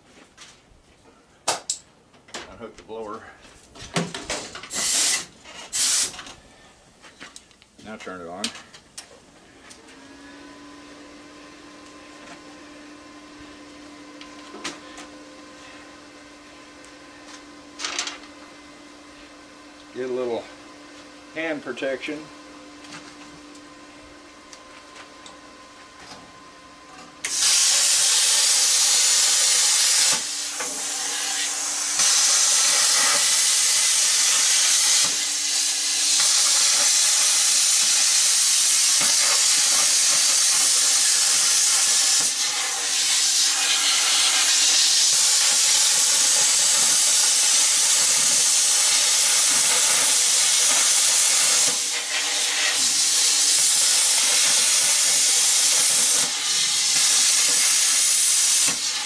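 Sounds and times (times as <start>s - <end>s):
plasma cutter hissing: 4.7s - 6.2s, 27.2s - 59.0s.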